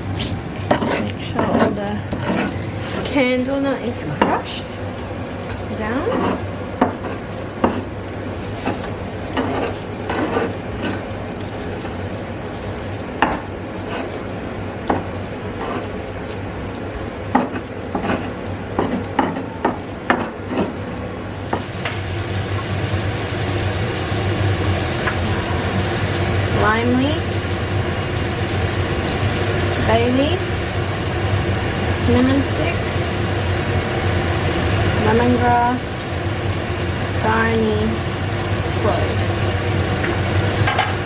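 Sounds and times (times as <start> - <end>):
utensil scraping and knocking pan: 0.2 - 3.1.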